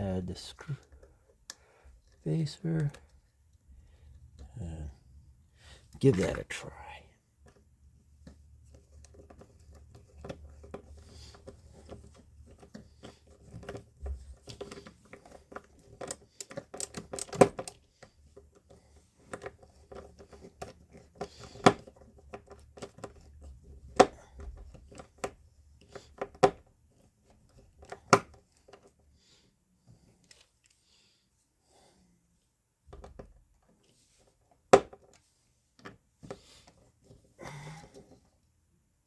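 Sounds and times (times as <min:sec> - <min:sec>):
clicks and knocks of parts: 0:08.7 - 0:25.4.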